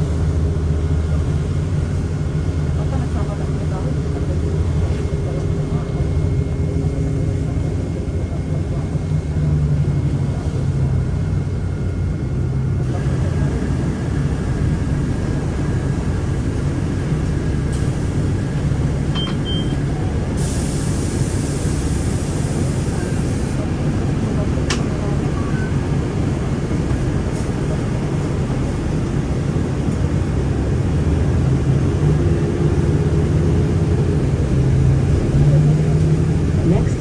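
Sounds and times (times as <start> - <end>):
bus engine and road rumble: 0.0 - 37.0
short high beep: 19.2 - 19.8
hiss: 20.4 - 23.6.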